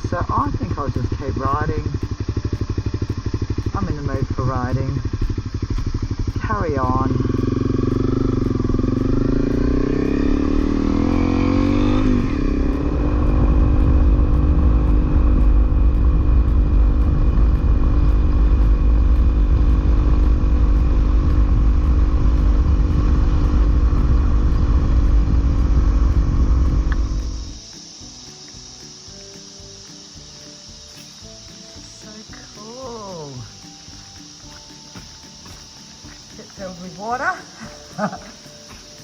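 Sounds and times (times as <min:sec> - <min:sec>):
dirt bike engine revving: 0:00.0 - 0:27.7.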